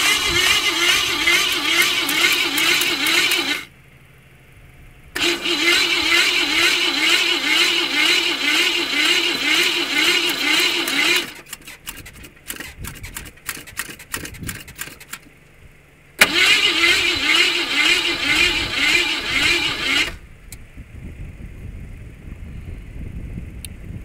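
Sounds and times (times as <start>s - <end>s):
rapid clicking: 0.0s - 3.7s, 5.2s - 15.3s
starter motor cranking engine: 0.0s - 3.7s, 5.2s - 15.4s, 16.2s - 20.3s
low steady rumble: 0.0s - 24.0s.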